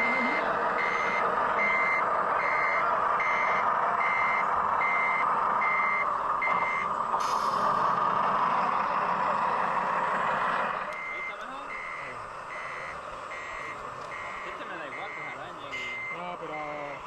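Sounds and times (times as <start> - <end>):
reversing beeper: 0.0 - 7.7, 10.8 - 17.0
short hiss: 7.2 - 7.7.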